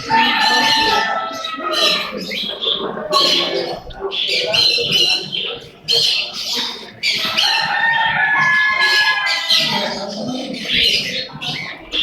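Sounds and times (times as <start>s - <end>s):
rooster crowing: 0.0s - 2.1s, 7.4s - 9.8s
small birds chirping: 0.0s - 12.0s.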